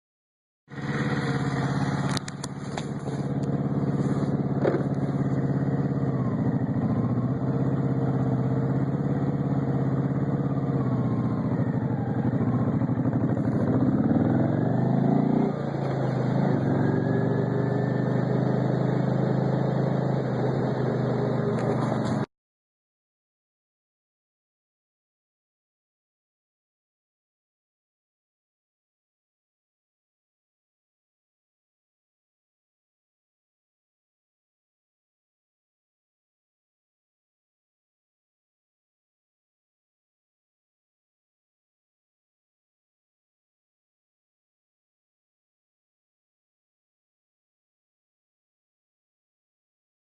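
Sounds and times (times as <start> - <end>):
motorcycle engine running: 0.7 - 22.3
odd engine noise: 0.7 - 22.3.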